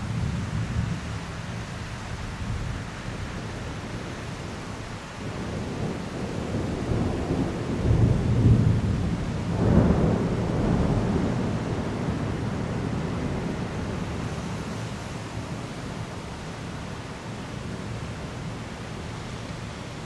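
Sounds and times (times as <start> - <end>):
heavy rain downpour: 0.0 - 20.0
thunder rumbling: 5.2 - 16.0.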